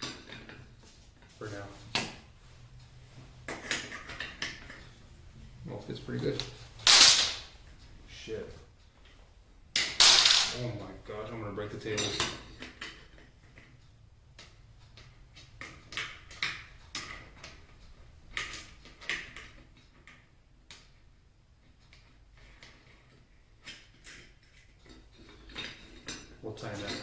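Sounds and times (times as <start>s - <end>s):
metal parts tapping on table: 6.8s - 7.5s, 9.8s - 10.6s.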